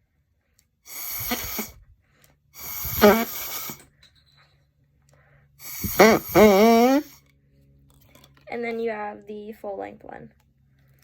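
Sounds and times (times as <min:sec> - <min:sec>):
straw kazoo buzzing: 0:00.9 - 0:01.8, 0:02.6 - 0:03.8, 0:05.6 - 0:07.3.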